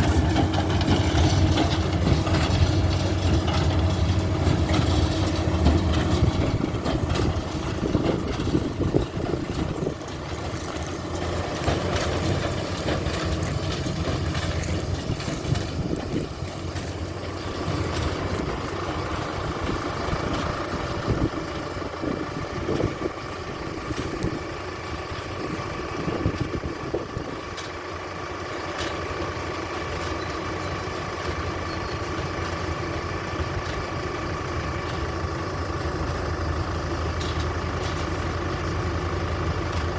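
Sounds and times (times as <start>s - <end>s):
steady whine: 0.0s - 27.0s
tractor engine running: 0.0s - 39.9s.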